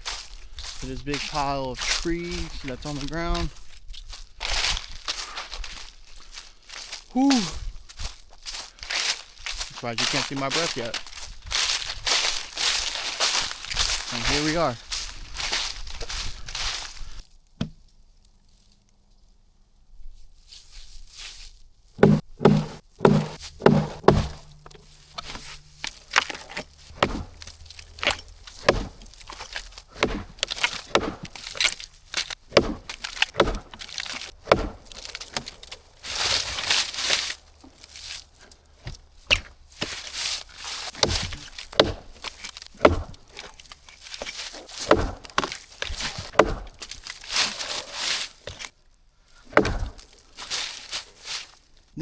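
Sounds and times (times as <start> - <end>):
branches rustling: 0.0 - 52.0
wood chopping and cracking: 8.9 - 14.7, 17.6 - 17.9, 22.0 - 48.7, 49.5 - 51.0.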